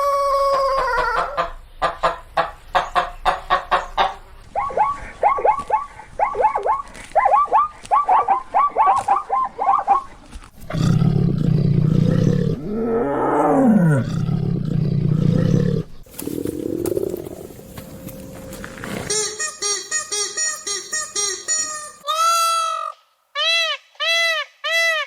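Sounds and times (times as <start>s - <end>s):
chicken clucking: 0.0s - 10.0s
large animal roaring: 10.6s - 17.6s.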